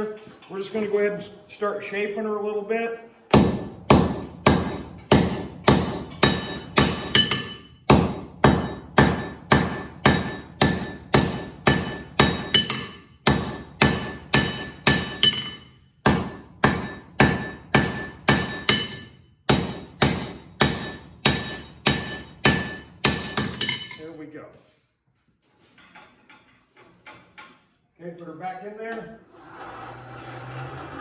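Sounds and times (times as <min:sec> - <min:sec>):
hammer striking steel on anvil: 0:03.3 - 0:24.0
anvil ringing: 0:03.4 - 0:24.0.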